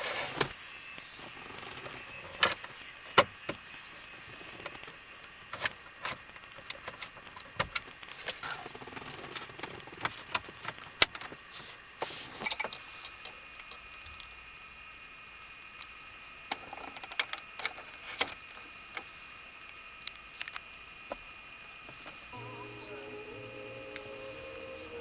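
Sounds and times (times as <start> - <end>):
faint high tone: 22.3 - 25.0.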